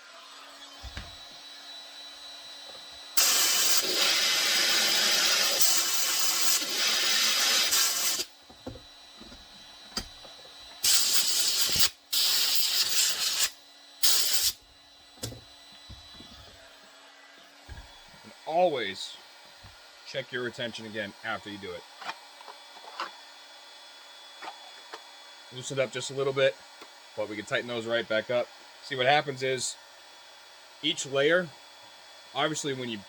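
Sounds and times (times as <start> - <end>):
heat gun blowing air: 0.7 - 17.0, 32.3 - 33.0.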